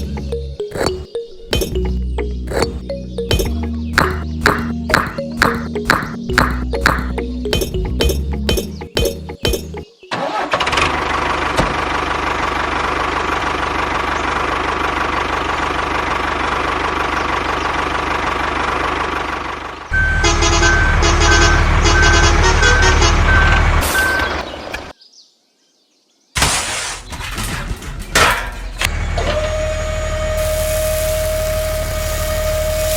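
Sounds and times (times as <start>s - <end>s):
vehicle engine running: 0.0s - 23.8s, 27.8s - 32.9s
rumbling engine: 0.0s - 24.9s, 26.4s - 32.9s.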